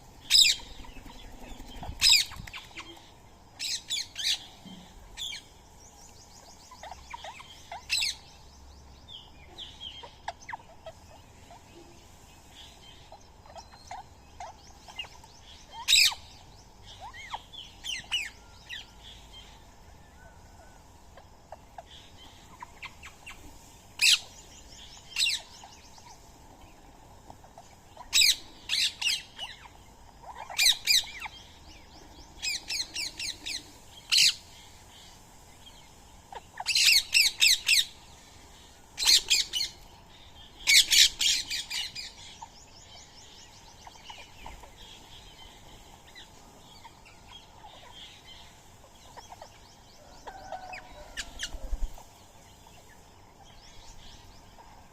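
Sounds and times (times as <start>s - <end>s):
soft bird chirps: 0.0s - 54.9s
parakeets squawking: 0.3s - 3.0s, 30.2s - 31.3s, 40.7s - 42.1s.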